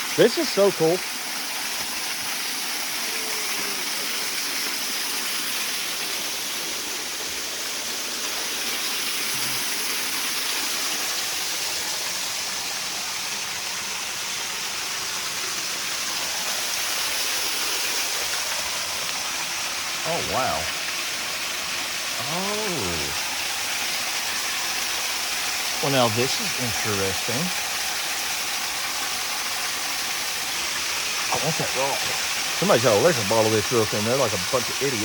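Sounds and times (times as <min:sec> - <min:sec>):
waterfall rushing: 0:00.0 - 0:35.0.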